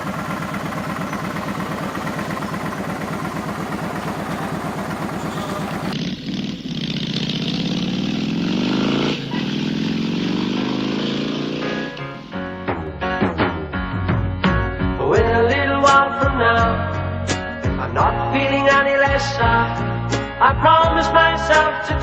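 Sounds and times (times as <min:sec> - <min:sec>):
motorcycle engine idling: 0:00.0 - 0:08.4
motorcycle accelerating away: 0:00.0 - 0:12.3.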